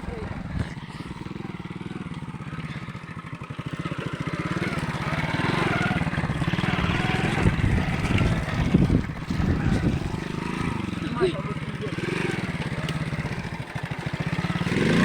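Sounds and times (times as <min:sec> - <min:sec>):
moped engine revving: 0:00.0 - 0:15.0.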